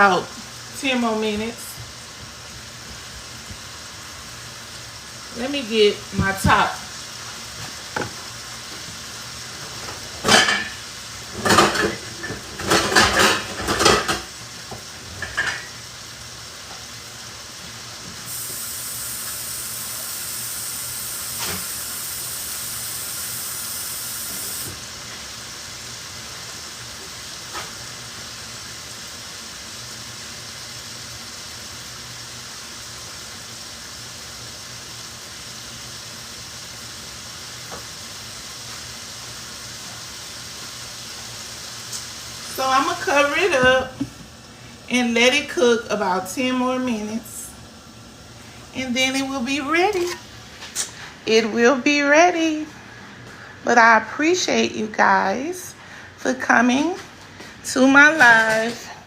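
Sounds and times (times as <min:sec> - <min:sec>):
vegetables sizzling in skillet: 0:00.0 - 0:59.0
metal cookware clattering: 0:10.2 - 0:14.3.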